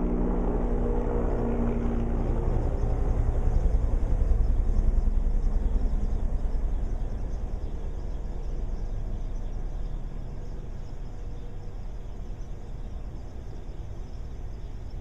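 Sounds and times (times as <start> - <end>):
helicopter rotor beating: 0.0 - 7.9.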